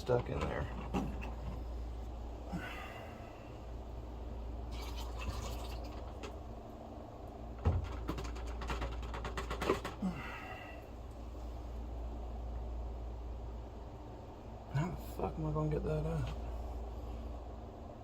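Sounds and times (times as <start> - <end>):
clicks and knocks on drain pump: 7.6 - 10.0.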